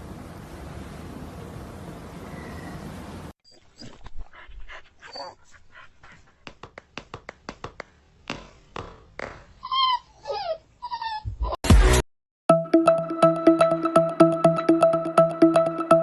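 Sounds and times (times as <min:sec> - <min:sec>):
dog whining: 0:09.6 - 0:11.6.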